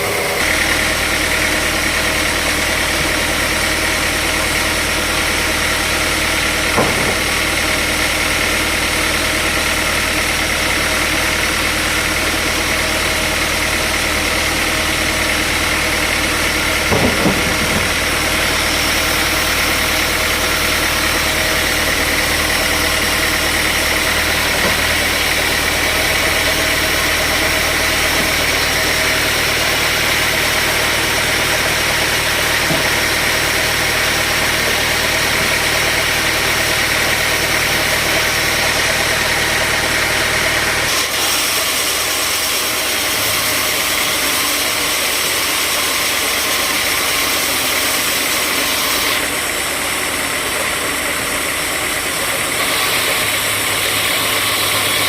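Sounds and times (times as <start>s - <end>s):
sawmill machinery running: 0.0s - 55.0s
short knock: 6.7s - 7.4s, 16.9s - 18.1s.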